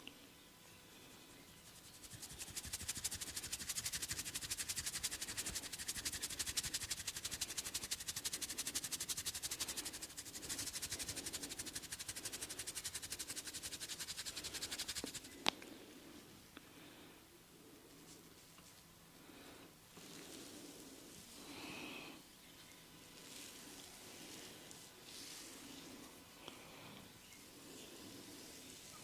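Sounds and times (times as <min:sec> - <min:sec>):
massage strokes on hair: 0:01.6 - 0:15.4, 0:23.2 - 0:26.2.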